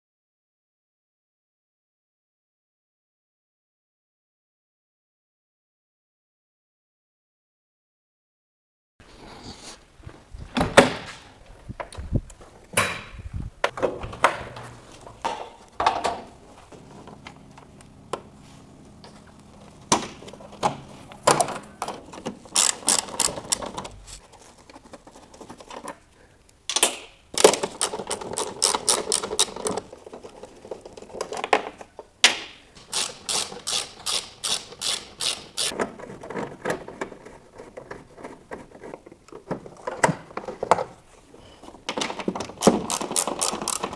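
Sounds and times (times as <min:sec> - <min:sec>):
parts knocking and clattering: 0:10.0 - 0:26.1, 0:26.7 - 0:43.9
hand tool clicking strokes: 0:19.0 - 0:24.2, 0:26.7 - 0:29.9, 0:32.8 - 0:35.8, 0:42.6 - 0:43.9.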